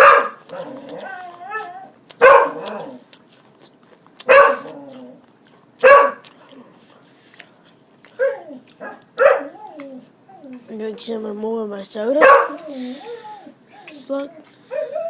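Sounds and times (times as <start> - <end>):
dog barking: 0.0 - 0.6, 2.2 - 3.0, 4.2 - 4.7, 5.8 - 6.3, 8.2 - 9.7, 12.2 - 12.7.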